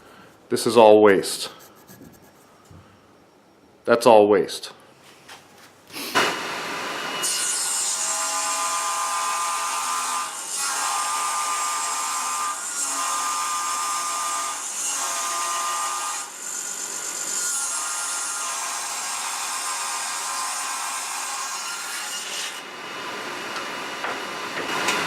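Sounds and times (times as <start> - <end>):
power tool cutting wood: 6.0 - 25.0.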